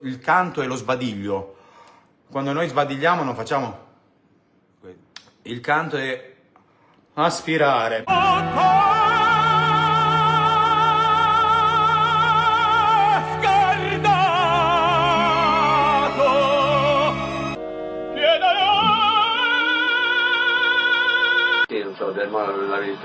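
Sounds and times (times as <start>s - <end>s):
operatic singing with vibrato: 8.1s - 21.7s.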